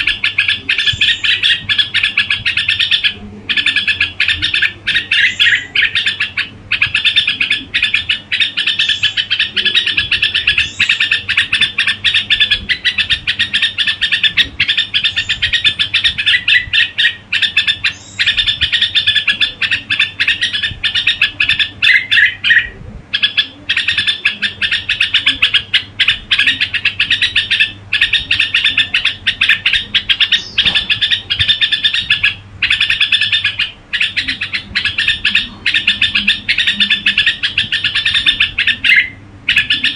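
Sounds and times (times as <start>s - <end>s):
bird chirping call: 0.0s - 39.9s.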